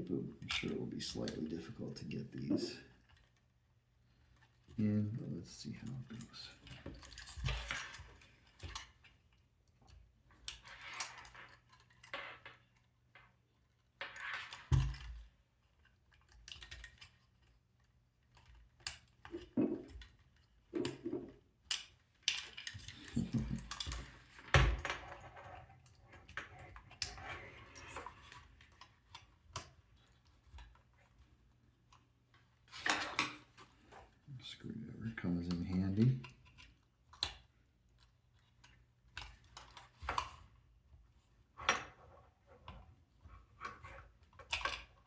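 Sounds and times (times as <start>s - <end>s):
plastic parts clicking and rattling: 13.7s - 31.3s.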